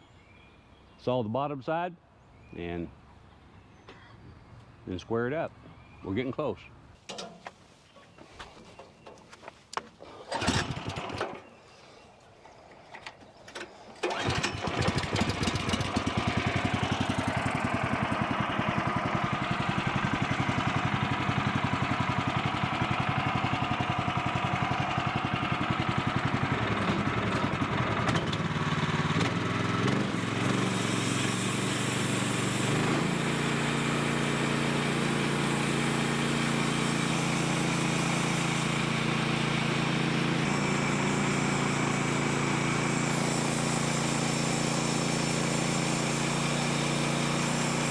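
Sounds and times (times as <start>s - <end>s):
engine starting and running: 10.0s - 11.6s, 12.8s - 47.9s.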